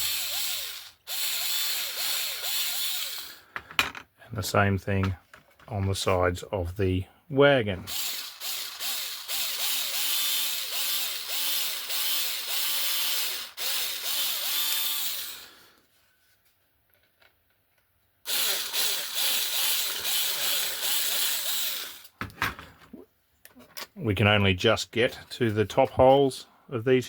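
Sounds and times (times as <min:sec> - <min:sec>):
small power drill whining: 0:00.0 - 0:03.5, 0:07.9 - 0:15.8, 0:18.2 - 0:22.2.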